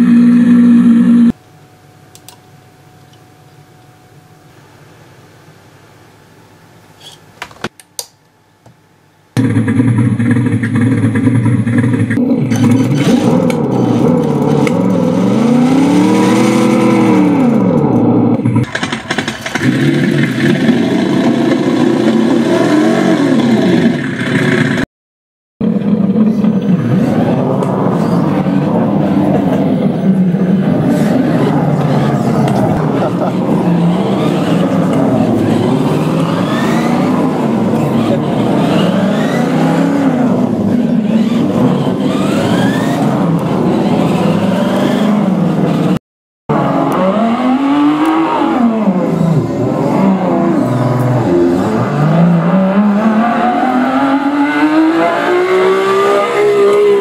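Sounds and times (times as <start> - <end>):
engine revving: 0.0 - 1.4, 9.4 - 24.9, 25.6 - 57.0
engine clicks: 17.6 - 22.2.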